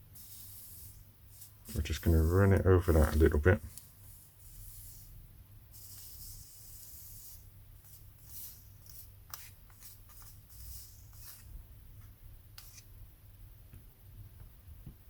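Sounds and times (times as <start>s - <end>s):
soldering iron sizzling and scraping: 0.0s - 5.2s, 5.8s - 11.6s.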